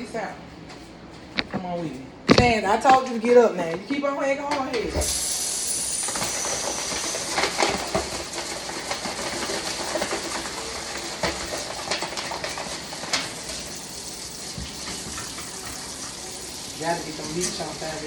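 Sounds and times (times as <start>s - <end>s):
water running from tap: 5.0s - 18.0s
pan and dishes clanking: 14.5s - 16.4s.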